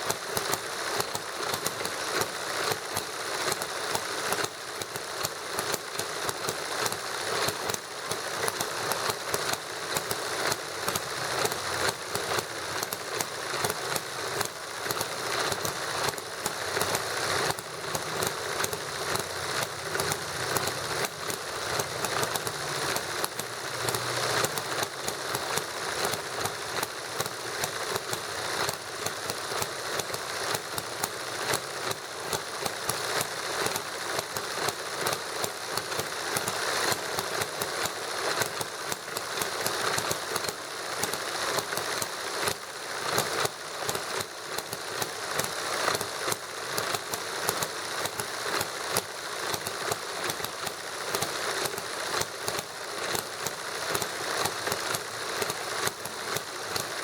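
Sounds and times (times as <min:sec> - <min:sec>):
model engines clattering: 0:00.0 - 0:57.0.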